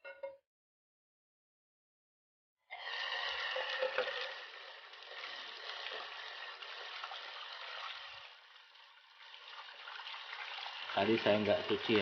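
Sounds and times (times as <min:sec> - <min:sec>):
running water splashing: 0:02.8 - 0:12.0.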